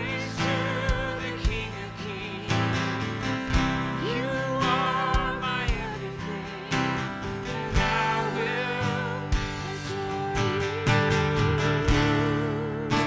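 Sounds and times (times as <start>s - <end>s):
guitar: 0.0s - 13.0s
person singing: 0.0s - 13.0s
sustained bass notes: 0.0s - 13.0s
drum hits: 0.9s - 1.9s, 9.3s - 9.8s, 11.8s - 12.4s.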